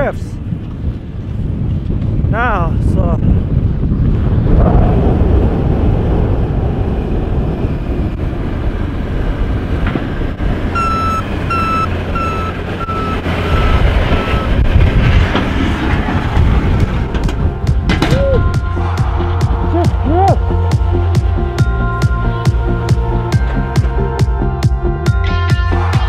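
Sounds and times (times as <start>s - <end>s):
vehicle engine rumble: 0.1s - 26.0s
reversing alarm beeps: 10.8s - 14.6s.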